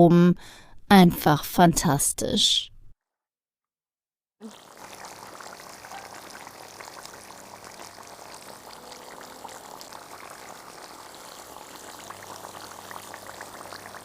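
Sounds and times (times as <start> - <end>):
stew bubbling with small pops: 4.4 - 14.0.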